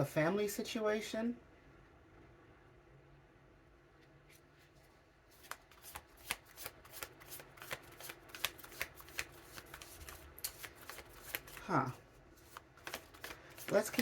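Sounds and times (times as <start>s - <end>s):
cards being shuffled: 5.3s - 14.0s.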